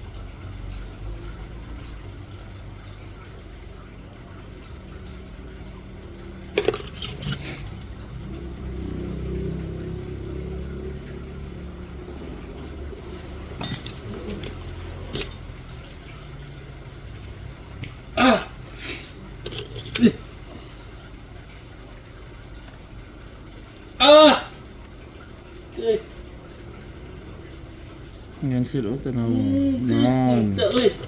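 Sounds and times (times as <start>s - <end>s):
low steady hum: 0.0s - 31.0s
metal instruments clinking: 6.6s - 8.0s, 13.5s - 16.0s, 19.4s - 20.2s, 30.7s - 31.0s.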